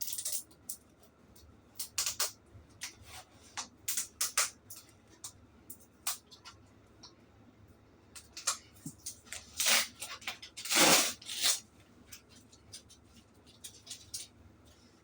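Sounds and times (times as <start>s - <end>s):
packaging ripping: 9.5s - 11.6s.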